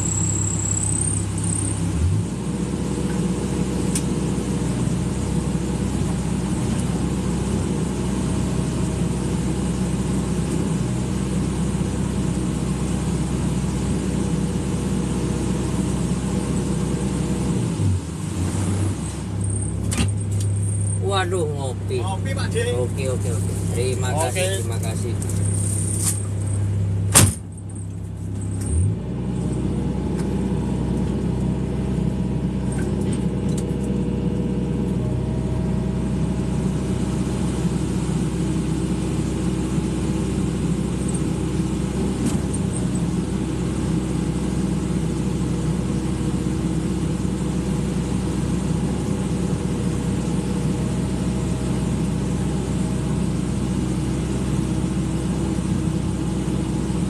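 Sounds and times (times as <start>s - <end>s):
diesel engine running: 0.0s - 57.0s
sharp knock: 27.1s - 27.5s.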